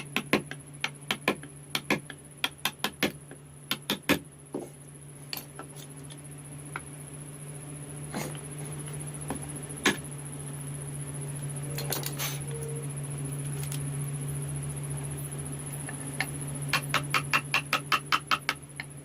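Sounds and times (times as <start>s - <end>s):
carving tools tapping wood: 0.0s - 4.7s, 9.3s - 10.0s, 15.9s - 19.0s
steady low hum: 0.0s - 19.0s.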